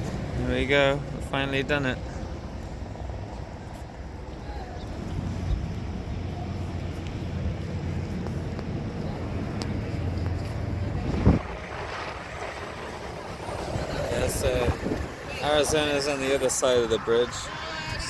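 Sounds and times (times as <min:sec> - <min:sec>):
highway traffic rushing: 0:00.0 - 0:18.0
low engine hum: 0:00.0 - 0:18.0.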